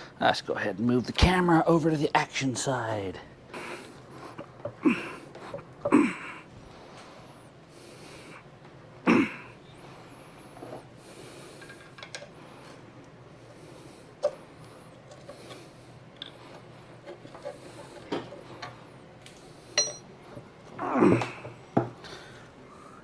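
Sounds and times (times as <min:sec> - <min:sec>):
man grunting: 0:20.8 - 0:21.5.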